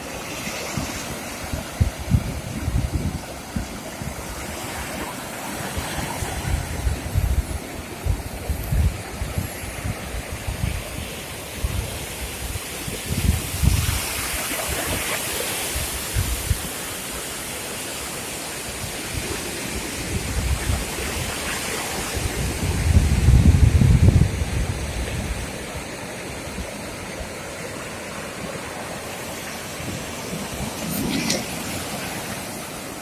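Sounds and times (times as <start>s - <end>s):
wind buffeting microphone: 0.0s - 16.9s, 18.8s - 27.6s
sea surf washing in: 0.0s - 33.0s.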